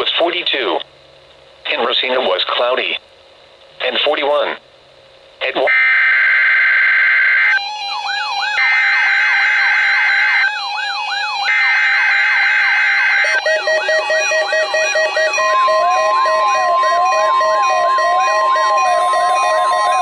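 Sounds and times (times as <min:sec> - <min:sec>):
steady warning tone: 0:05.4 - 0:20.0
buzzing data bursts: 0:05.7 - 0:20.0
electronic siren alarms whooping: 0:05.7 - 0:20.0.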